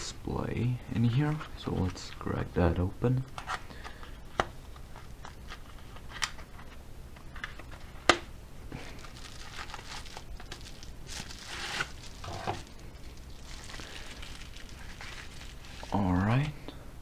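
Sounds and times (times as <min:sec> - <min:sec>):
packaging crinkling and rustling: 0:03.2 - 0:16.6.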